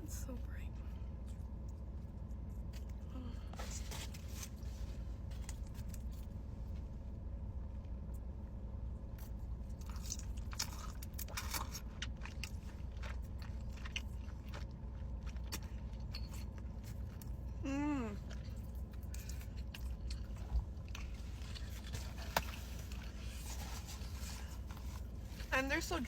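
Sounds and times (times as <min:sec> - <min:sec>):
person chewing crunchy food: 0:09.2 - 0:25.5.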